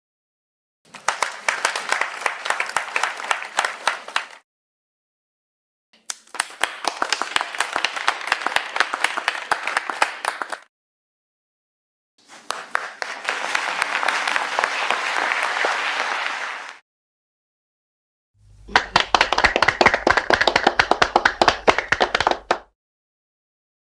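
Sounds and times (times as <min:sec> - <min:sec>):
audience applause: 0:00.9 - 0:04.4, 0:06.3 - 0:10.7, 0:12.3 - 0:16.8, 0:18.5 - 0:22.7.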